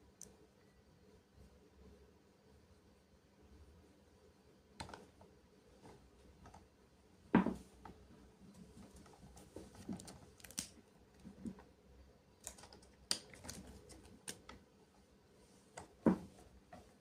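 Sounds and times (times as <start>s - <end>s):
plastic packaging crackling: 9.9s - 10.8s.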